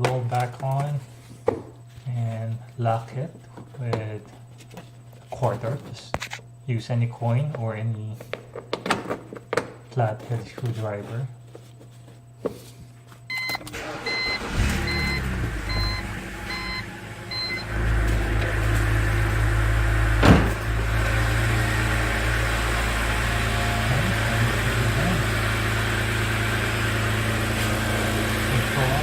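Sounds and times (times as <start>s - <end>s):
car engine idling: 13.7s - 29.0s.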